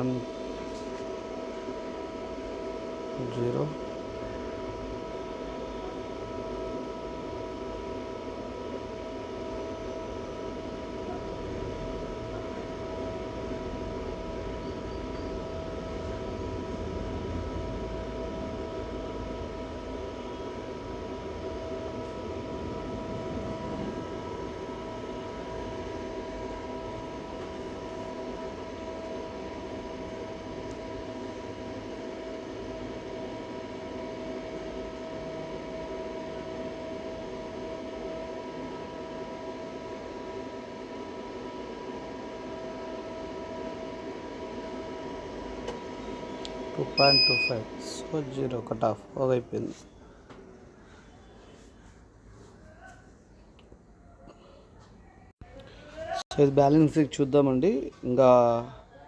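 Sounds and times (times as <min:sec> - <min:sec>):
machine hum and hiss: 0:00.0 - 0:52.9
whining tones: 0:46.4 - 0:48.0.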